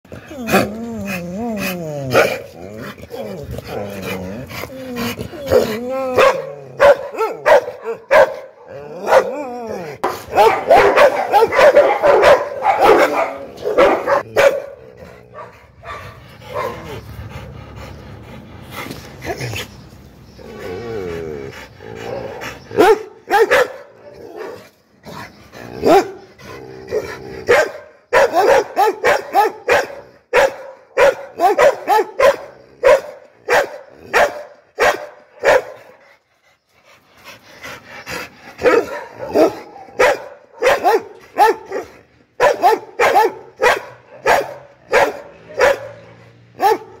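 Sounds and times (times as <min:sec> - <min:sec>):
dog barking angrily: 0:02.1 - 0:02.6, 0:05.5 - 0:09.4, 0:10.0 - 0:17.0, 0:22.2 - 0:24.6, 0:25.7 - 0:26.3, 0:26.9 - 0:36.0, 0:38.6 - 0:47.0.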